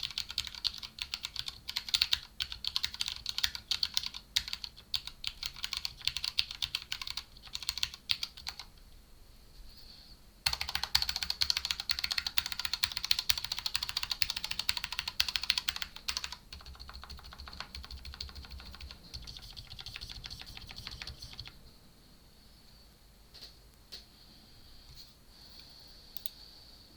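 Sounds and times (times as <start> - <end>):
mechanical keyboard typing: 0.0 - 8.7, 10.4 - 21.6.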